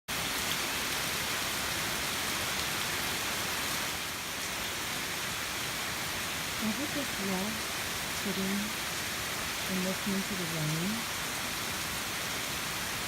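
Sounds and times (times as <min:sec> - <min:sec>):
heavy rain pouring: 0:00.1 - 0:13.0.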